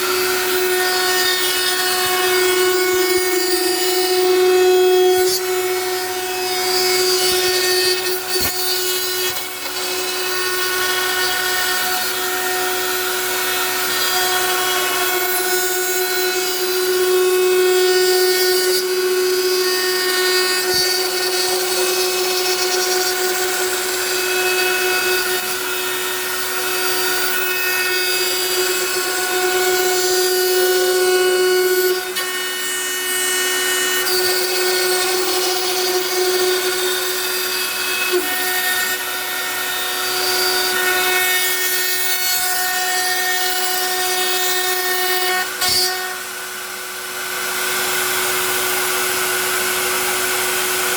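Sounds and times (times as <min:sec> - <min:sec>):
router spindle whine: 0:45.6 - 0:50.9.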